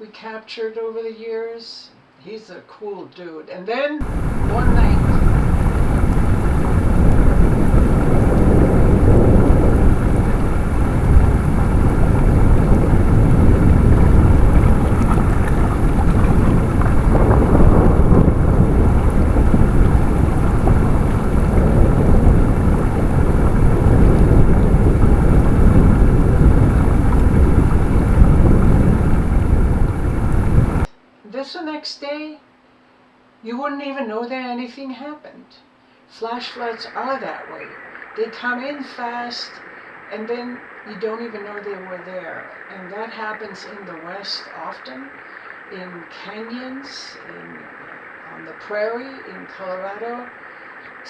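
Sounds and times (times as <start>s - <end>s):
deep rumble: 4.0s - 30.9s
floodwater rushing: 4.0s - 30.9s, 36.6s - 51.0s.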